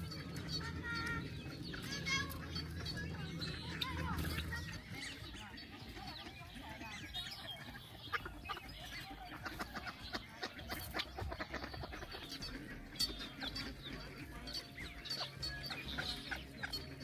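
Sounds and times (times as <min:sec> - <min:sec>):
birds chirping and clucking: 0:00.0 - 0:17.0.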